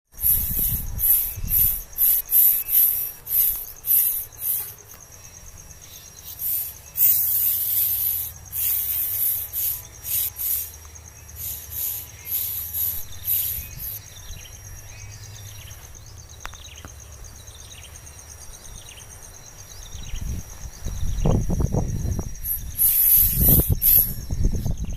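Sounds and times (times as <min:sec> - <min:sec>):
insects chirping: 0:00.0 - 0:24.9
thin high buzz: 0:00.1 - 0:14.1, 0:21.8 - 0:24.6
bird chirps: 0:00.1 - 0:15.8, 0:22.4 - 0:24.9.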